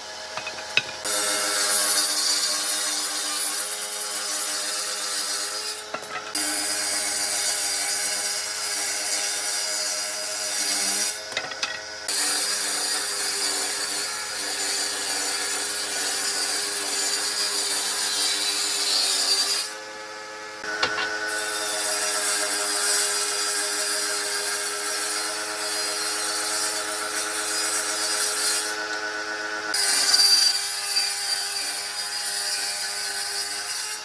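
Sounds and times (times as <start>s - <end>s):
power tool grinding wood: 0.0s - 33.7s.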